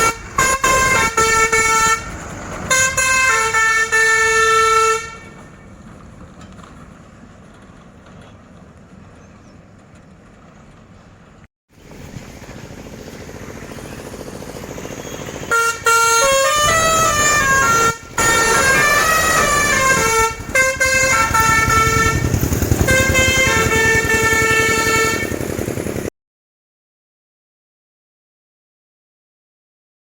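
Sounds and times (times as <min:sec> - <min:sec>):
truck musical horn playing tune: 0:00.0 - 0:05.5, 0:15.5 - 0:25.5
truck engine noise: 0:00.0 - 0:26.1.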